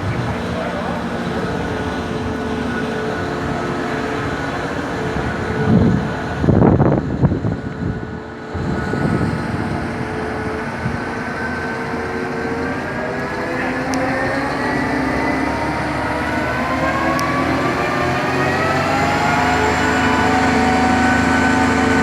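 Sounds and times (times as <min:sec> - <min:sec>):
large engine humming: 0:00.0 - 0:22.0.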